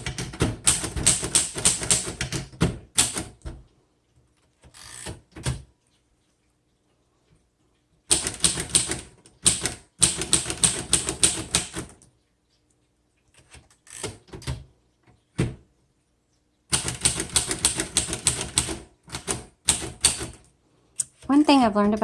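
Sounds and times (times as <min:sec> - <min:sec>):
typewriter keys clicking: 0:00.0 - 0:03.5, 0:08.1 - 0:12.0, 0:16.7 - 0:20.4.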